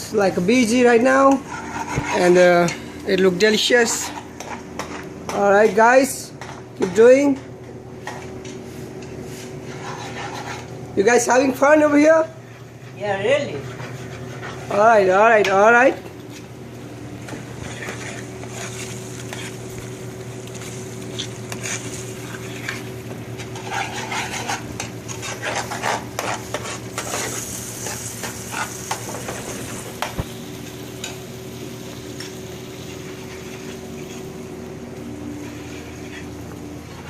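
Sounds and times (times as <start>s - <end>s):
steady machine hum: 0.0s - 37.0s
metal utensils scraping pans: 1.2s - 5.1s, 9.0s - 10.7s, 23.4s - 29.4s
food sizzling in pans: 8.0s - 37.0s.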